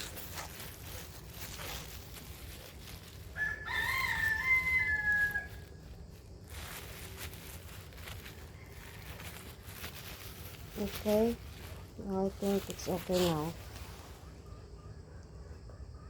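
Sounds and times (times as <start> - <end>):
rooster crowing: 3.3 - 5.8, 8.1 - 9.7.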